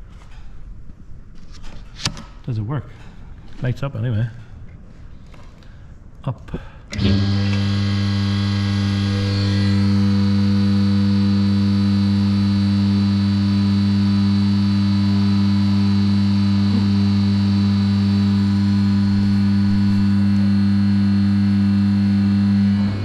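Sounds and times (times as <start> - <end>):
hydraulic pump humming: 6.8 - 23.0.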